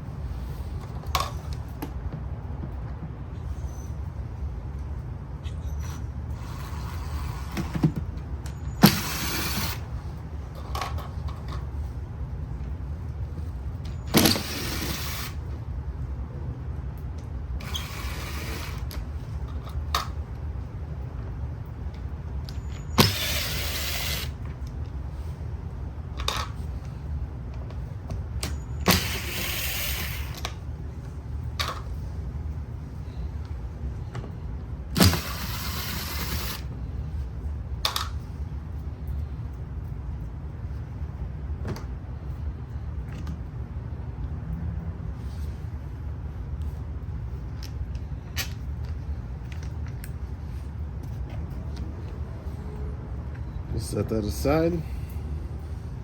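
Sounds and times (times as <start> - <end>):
low steady hum: 0.0 - 56.0
small electric motor whirring: 8.8 - 9.9, 14.0 - 15.4, 17.6 - 19.0, 22.9 - 24.4, 28.8 - 30.6, 35.0 - 36.7
sharp mechanical clicks: 22.5 - 24.8, 34.9 - 36.7.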